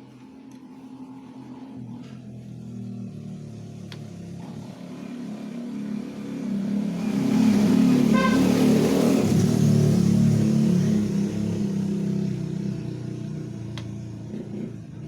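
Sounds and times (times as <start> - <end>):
motorcycle engine revving: 0.8 - 15.0.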